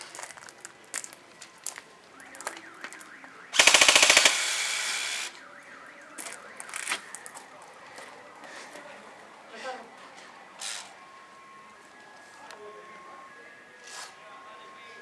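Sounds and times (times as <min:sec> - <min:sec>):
airsoft gun full-auto burst: 0:03.6 - 0:05.4.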